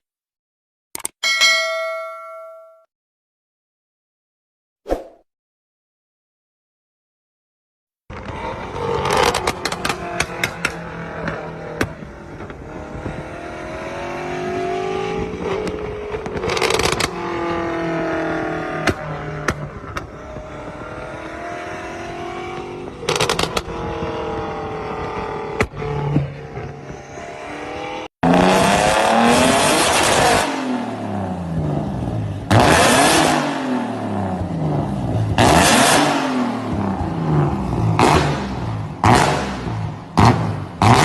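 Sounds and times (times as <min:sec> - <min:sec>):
car engines revving: 0:08.1 - 0:41.0.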